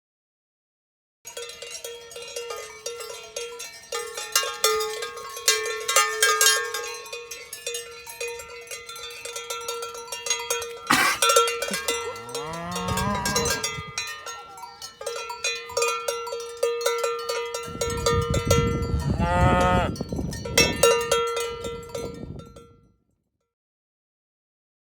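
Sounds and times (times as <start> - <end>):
cowbells clanking: 1.3 - 22.8
cow lowing: 10.9 - 14.9, 18.7 - 20.0.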